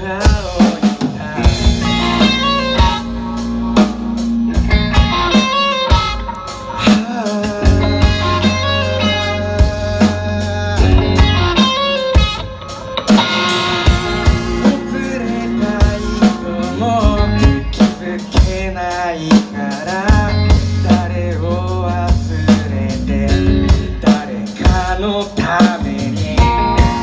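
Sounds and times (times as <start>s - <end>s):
bass guitar: 0.0s - 27.0s
drum kit: 0.0s - 27.0s
electric guitar melody with bends: 1.4s - 18.5s, 19.9s - 24.1s, 26.0s - 27.0s.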